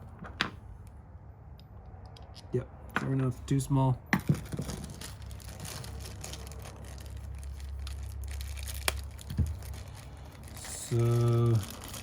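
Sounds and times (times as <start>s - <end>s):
rustling of packaging: 4.2s - 12.0s.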